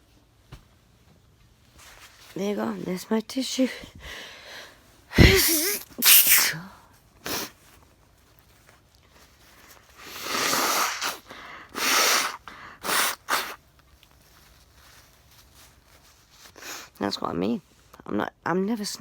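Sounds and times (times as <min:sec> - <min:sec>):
woman sneezing: 0:05.1 - 0:06.7, 0:10.2 - 0:13.6.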